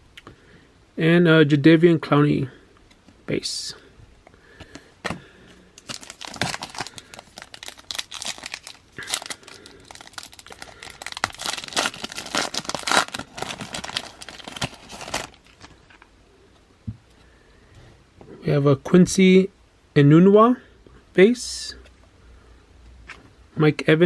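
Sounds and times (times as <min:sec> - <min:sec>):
foil wrapper torn and crinkled: 0:05.8 - 0:16.1.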